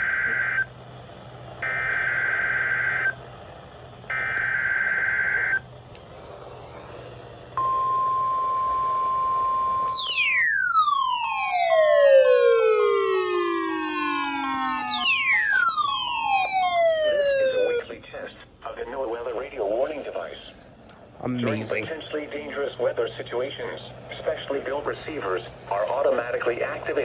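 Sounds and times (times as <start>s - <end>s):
siren-like wail sweeping down: 7.8s - 17.8s
steady alert tone: 9.9s - 17.8s.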